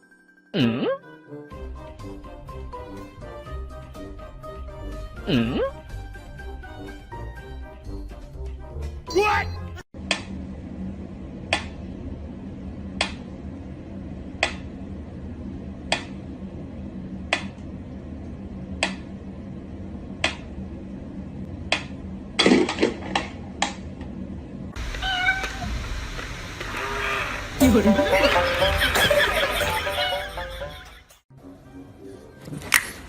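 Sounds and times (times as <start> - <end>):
steady low hum: 10.0 - 31.0.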